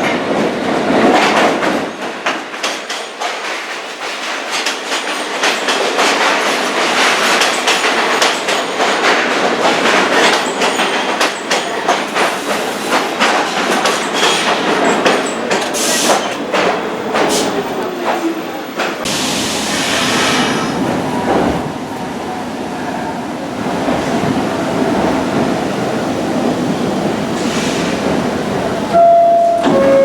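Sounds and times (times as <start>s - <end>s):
subway wheels clattering over rail joints: 0.0s - 30.0s.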